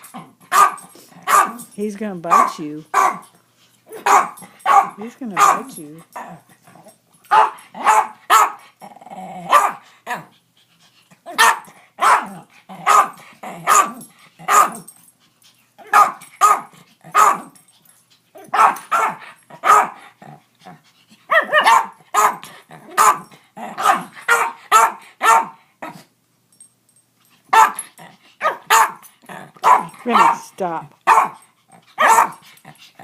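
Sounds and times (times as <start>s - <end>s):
puppy barking: 0.5s - 1.7s, 2.3s - 3.3s, 3.9s - 5.8s, 7.3s - 8.6s, 9.5s - 10.2s, 11.3s - 14.9s, 15.8s - 17.5s, 18.4s - 20.0s, 21.3s - 25.6s, 27.5s - 27.8s, 28.4s - 29.0s, 29.6s - 31.4s, 32.0s - 32.4s.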